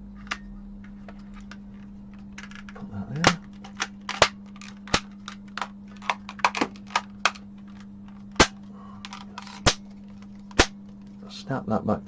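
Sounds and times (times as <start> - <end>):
plastic case snapping together: 2.2 - 11.1.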